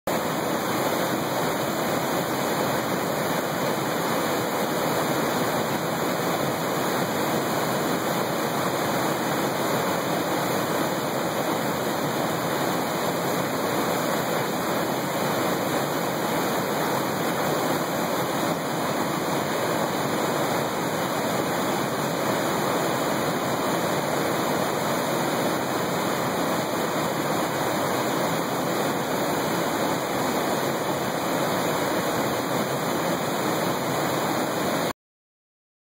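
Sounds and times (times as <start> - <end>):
waterfall roaring: 0.1 - 34.9.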